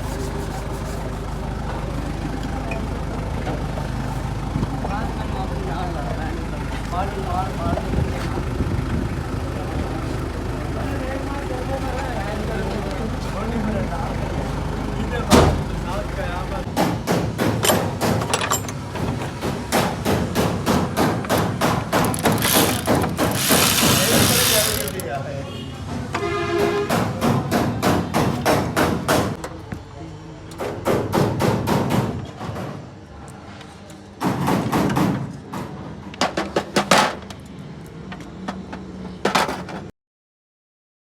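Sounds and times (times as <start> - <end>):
sharp knocks and clanks: 16.7 - 25.0
loud hissing rush: 22.1 - 25.0.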